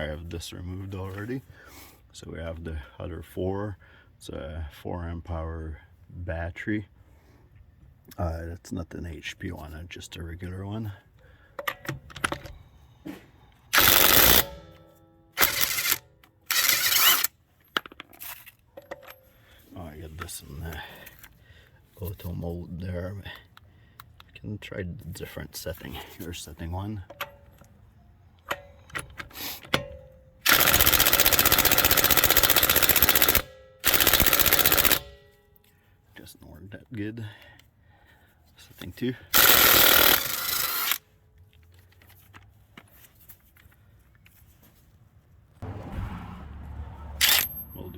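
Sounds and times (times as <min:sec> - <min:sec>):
impact wrench hammering: 0:13.8 - 0:14.8, 0:29.8 - 0:35.4.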